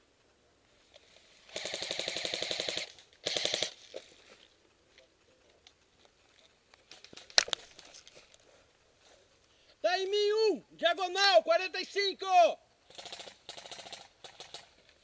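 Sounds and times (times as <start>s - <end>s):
airsoft gun firing bursts: 1.5s - 3.8s, 12.8s - 14.8s.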